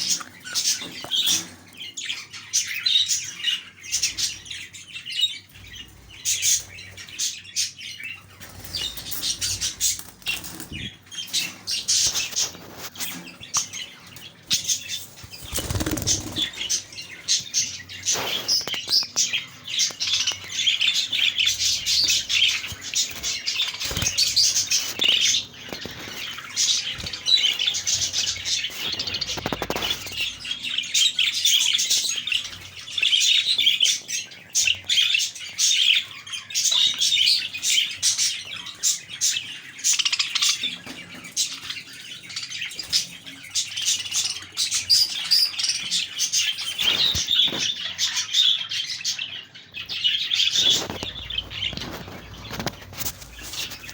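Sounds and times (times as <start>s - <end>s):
budgerigars chattering and chirping: 0.0s - 53.9s
wings fluttering: 14.6s - 17.4s, 21.4s - 30.4s, 50.6s - 53.9s.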